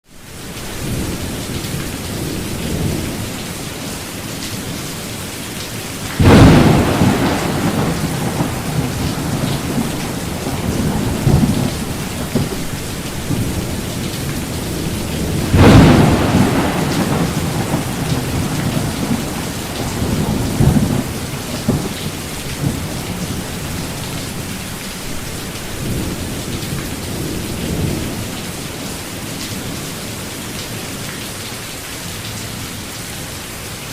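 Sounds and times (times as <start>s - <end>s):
steady rain: 0.0s - 33.9s
loud thunderclaps rumbling: 6.2s - 28.8s.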